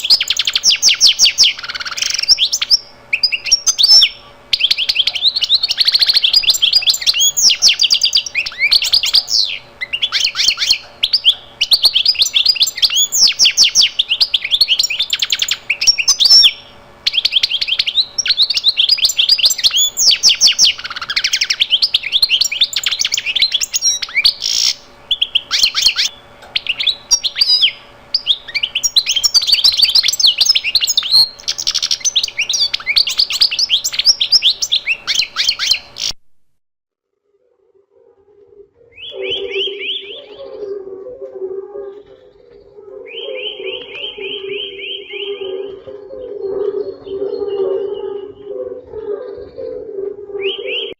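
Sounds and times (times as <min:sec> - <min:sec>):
songbird chirps and trills: 0:00.0 - 0:36.2, 0:38.8 - 0:50.9.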